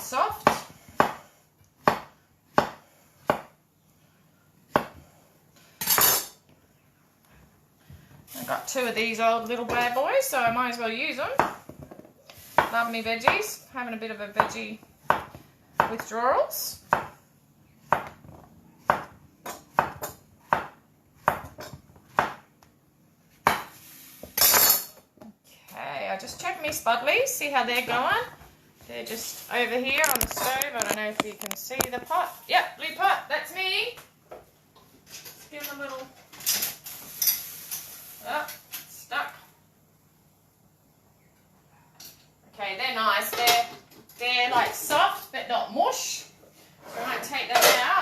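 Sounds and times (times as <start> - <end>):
knife chopping on cutting board: 0.4 - 3.5, 4.7 - 5.0, 12.4 - 13.4, 14.4 - 16.1, 16.9 - 17.2, 17.9 - 22.5, 23.4 - 23.8.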